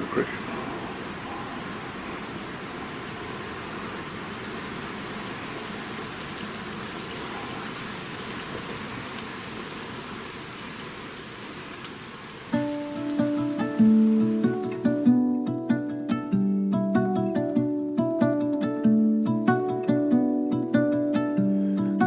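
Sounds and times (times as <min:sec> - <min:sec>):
insects shrilling: 0:00.0 - 0:15.1
low even hiss: 0:00.0 - 0:15.1.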